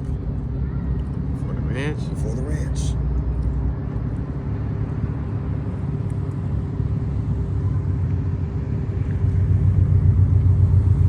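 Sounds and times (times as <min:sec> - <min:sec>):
low rumble: 0:06.4 - 0:11.0.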